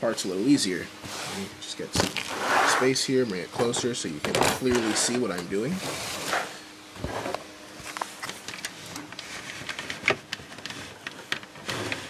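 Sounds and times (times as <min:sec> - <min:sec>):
plastic and cable rustling: 0:07.0 - 0:12.0.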